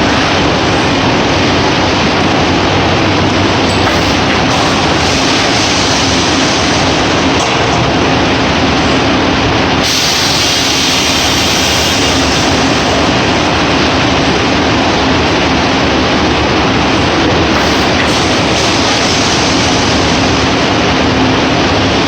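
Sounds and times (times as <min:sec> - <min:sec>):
packaging machine running: 0:00.0 - 0:15.6, 0:16.6 - 0:21.9
bright hiss: 0:09.8 - 0:13.1.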